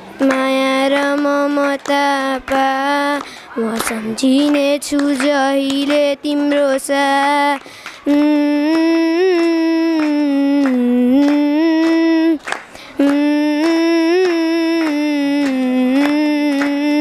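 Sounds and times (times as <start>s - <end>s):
sung verses: 0.0s - 17.0s.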